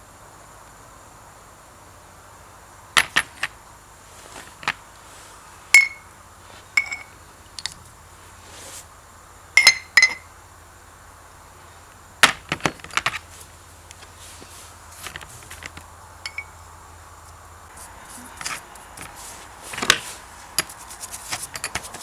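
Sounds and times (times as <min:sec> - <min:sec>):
faint steady hum: 0:00.0 - 0:22.0
metal tools clinking: 0:05.8 - 0:06.1, 0:06.8 - 0:07.9, 0:09.6 - 0:10.3, 0:14.9 - 0:16.7, 0:17.8 - 0:22.0.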